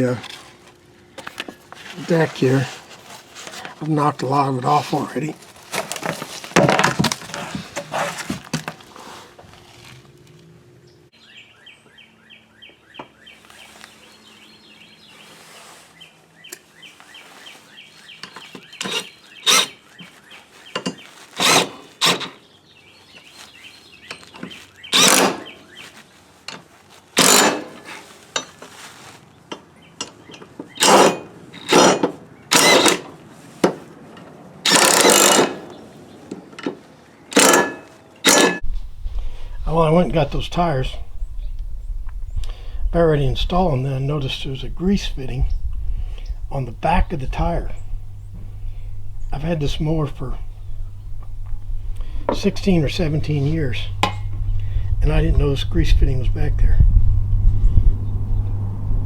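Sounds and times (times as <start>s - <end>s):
grass scraped off mower deck: 1.3s - 3.9s, 4.9s - 10.1s, 38.3s - 57.7s.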